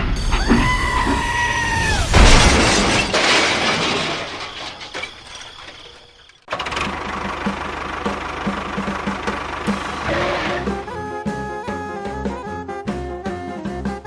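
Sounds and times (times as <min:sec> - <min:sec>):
loud crash with clattering rattle: 0:01.8 - 0:10.8.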